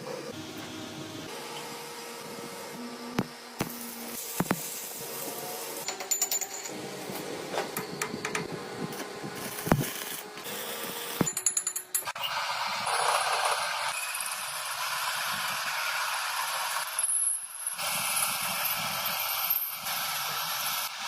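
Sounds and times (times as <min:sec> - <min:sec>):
steady background hum: 0:00.0 - 0:14.0
metallic clinks and knocks: 0:05.8 - 0:06.8, 0:11.2 - 0:12.1.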